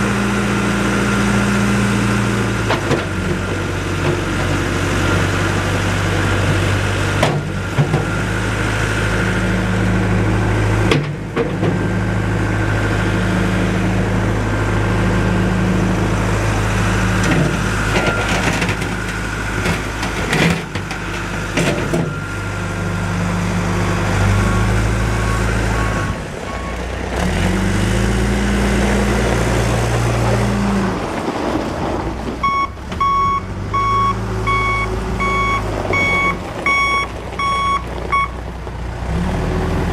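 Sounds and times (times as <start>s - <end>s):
diesel engine under load: 0.0s - 39.9s
reversing alarm beeping: 23.7s - 26.8s, 32.4s - 38.4s.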